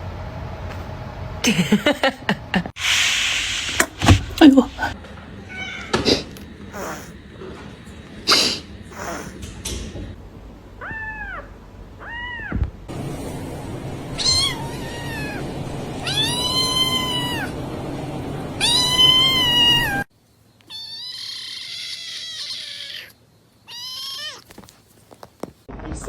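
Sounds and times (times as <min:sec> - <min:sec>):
cat meowing: 0:05.4 - 0:06.0, 0:10.8 - 0:12.7, 0:14.2 - 0:17.6, 0:18.6 - 0:20.1, 0:20.7 - 0:24.5.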